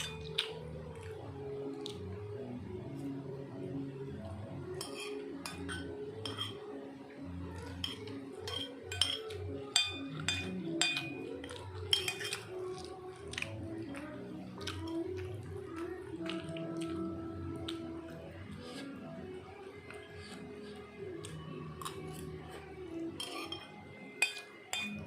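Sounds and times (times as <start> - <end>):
metal utensils clinking on dish: 0.0 - 0.6, 4.7 - 6.8, 7.6 - 12.8, 23.2 - 25.0.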